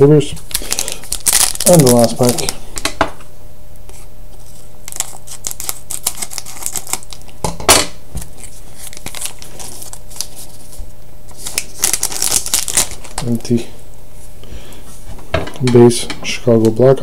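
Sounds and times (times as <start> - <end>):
card pack wrapper crinkling: 0.4 - 2.9, 4.8 - 7.4, 8.2 - 13.5.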